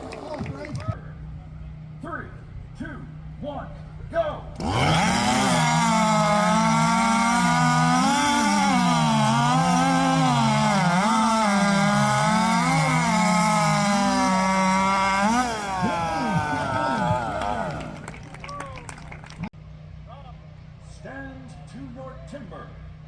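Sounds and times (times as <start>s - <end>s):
chainsaws cutting log: 4.6s - 19.5s.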